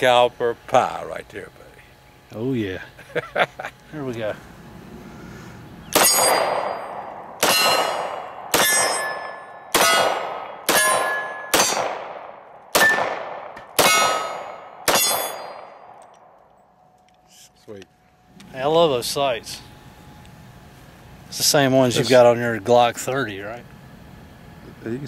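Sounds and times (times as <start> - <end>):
pistol shots: 5.9 - 16.0
bullet clanging on steel target: 6.0 - 10.0, 13.6 - 16.3.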